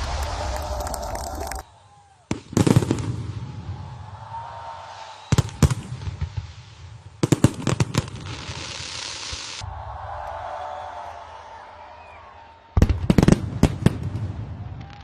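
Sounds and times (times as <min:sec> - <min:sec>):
fireworks bursting bangs: 0:00.0 - 0:01.6, 0:02.3 - 0:04.0, 0:04.9 - 0:09.7, 0:12.8 - 0:15.0
fireworks crackling: 0:00.0 - 0:01.7, 0:04.8 - 0:09.6.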